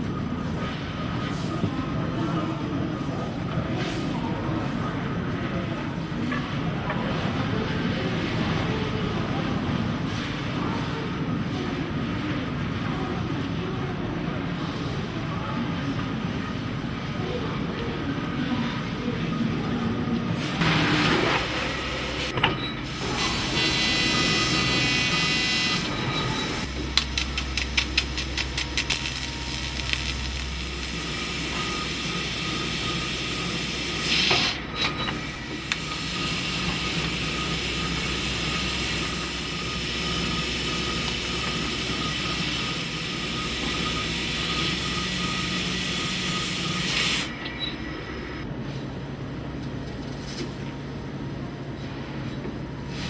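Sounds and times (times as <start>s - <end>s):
laser cutter gas hissing: 20.4s - 47.3s.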